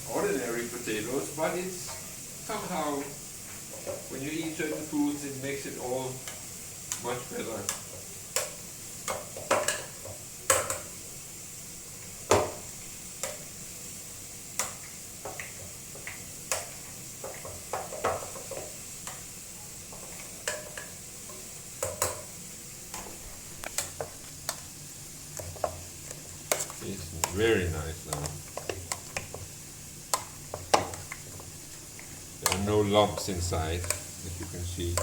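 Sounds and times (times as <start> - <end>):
utensil scraping through mash: 25.3 - 35.0.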